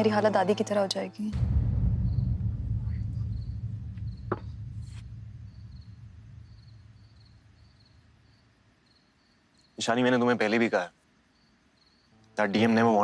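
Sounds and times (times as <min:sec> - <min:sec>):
faint cricket chirps: 0:00.0 - 0:13.0
low deep drone: 0:01.4 - 0:08.4.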